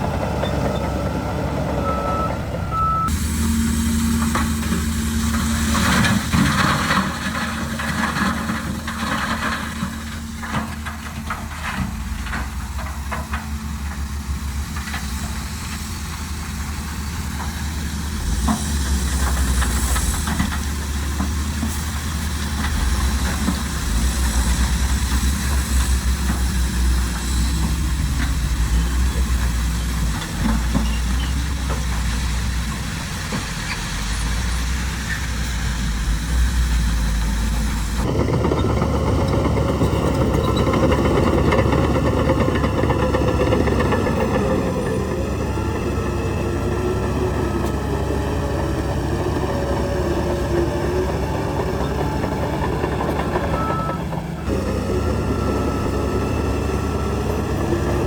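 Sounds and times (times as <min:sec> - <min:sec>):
heavy diesel engine working: 0:00.0 - 0:58.0.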